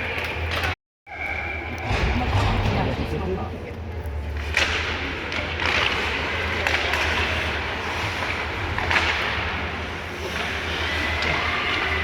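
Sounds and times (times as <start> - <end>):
low rink hum: 0.0 - 12.0
skates scraping ice: 4.1 - 12.0
hockey sticks and puck clacking: 4.3 - 12.0.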